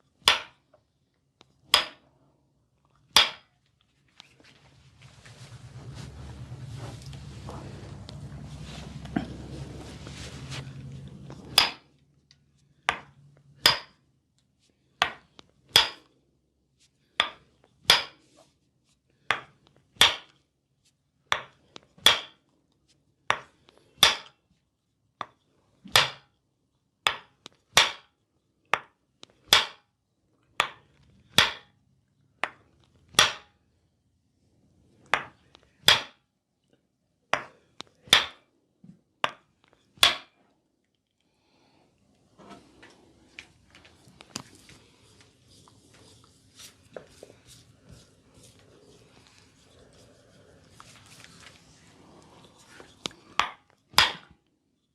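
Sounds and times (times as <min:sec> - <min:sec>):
percussive massage slapping strikes: 0:27.1 - 0:28.1, 0:38.1 - 0:38.4.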